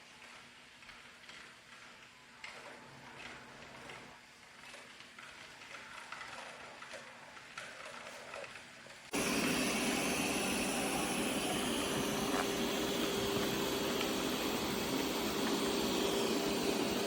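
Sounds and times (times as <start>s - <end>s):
robot vacuum suction motor: 9.1s - 17.0s.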